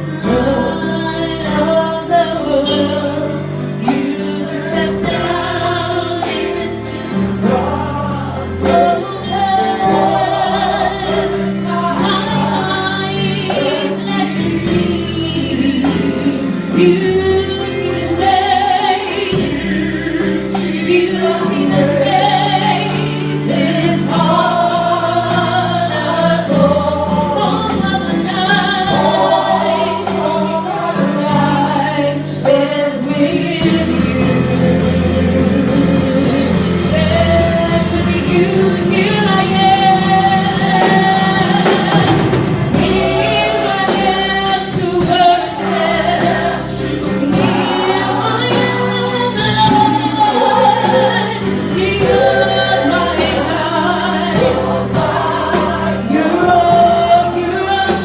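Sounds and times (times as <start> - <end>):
voices singing together: 0.0 - 58.0
steady drum beat: 0.1 - 58.0
instruments playing: 32.8 - 57.8.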